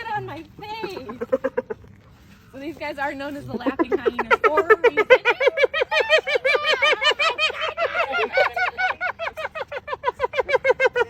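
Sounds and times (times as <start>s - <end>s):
hyenas giggling whoops: 0.8s - 2.3s, 3.6s - 11.0s.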